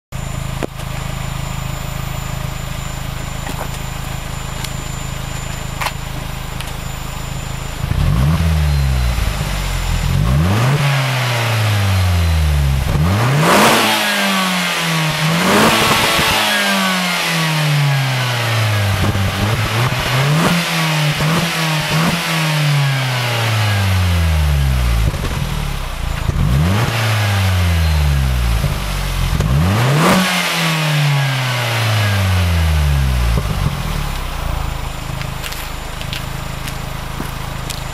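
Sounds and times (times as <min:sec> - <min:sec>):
car engine idling: 0:00.1 - 0:37.9
car engine revving: 0:00.1 - 0:37.9.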